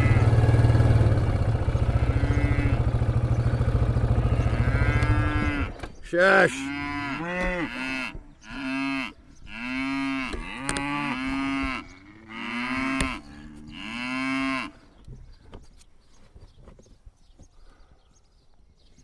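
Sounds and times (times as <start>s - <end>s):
cattle mooing: 0.0s - 0.5s, 1.3s - 14.8s.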